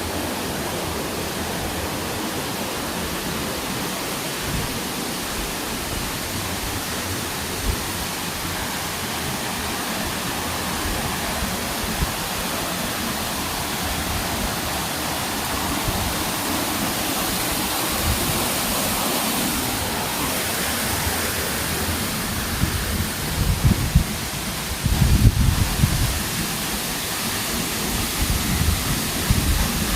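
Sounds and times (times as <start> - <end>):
flowing and falling water: 0.0 - 29.9.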